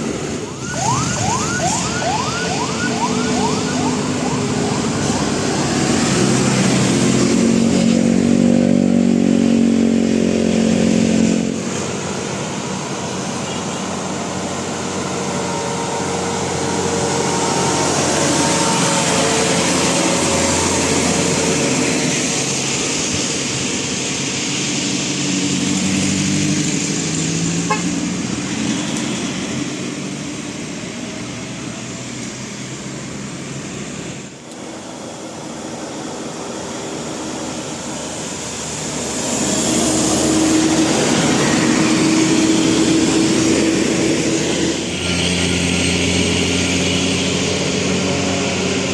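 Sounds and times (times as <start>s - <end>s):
engine and road noise: 0.0s - 48.9s
bus musical horn: 27.7s - 28.0s.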